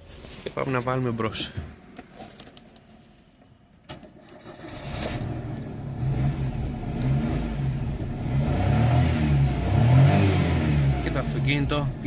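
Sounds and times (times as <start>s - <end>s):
car engine starting and running: 3.9s - 12.0s.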